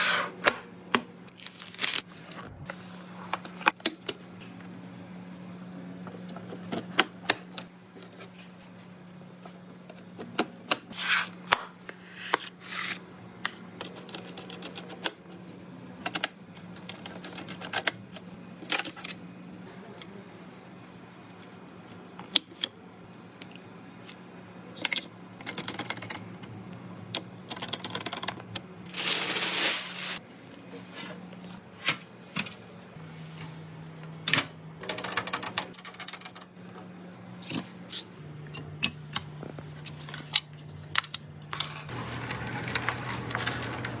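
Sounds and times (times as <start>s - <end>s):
rustling scrape: 28.9s - 31.2s.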